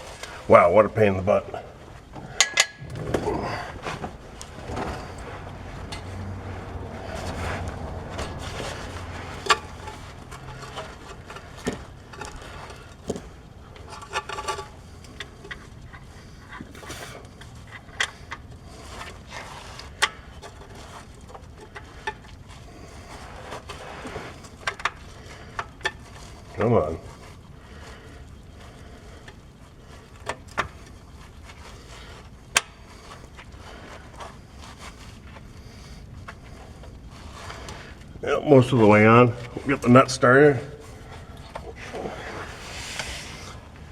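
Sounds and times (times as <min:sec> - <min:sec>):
faint steady background noise: 0:00.0 - 0:43.9
metal scraping: 0:02.2 - 0:27.3
tools clinking on metal parts: 0:02.4 - 0:02.9.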